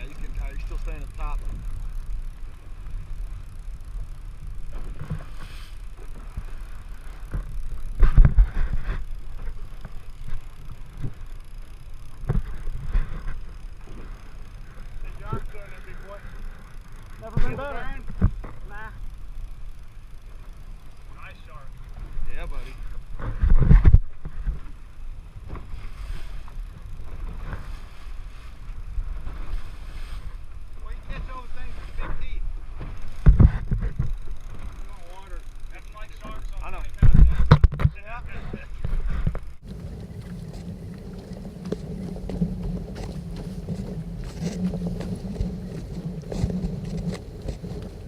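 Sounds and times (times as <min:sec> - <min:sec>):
boat engine running: 0:00.0 - 0:48.0
wind buffeting microphone: 0:36.3 - 0:48.0.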